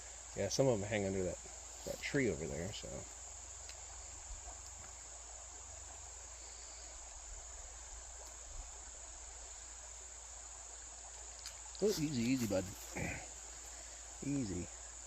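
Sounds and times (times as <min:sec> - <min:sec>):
high-pitched insect chorus: 0:00.0 - 0:15.0
faint ticks: 0:03.1 - 0:05.1, 0:08.1 - 0:08.7, 0:11.0 - 0:12.9.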